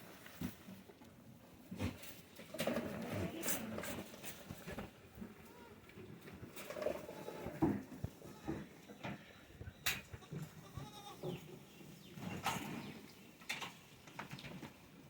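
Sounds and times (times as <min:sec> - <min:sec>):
goats bleating faintly: 0:10.1 - 0:11.4.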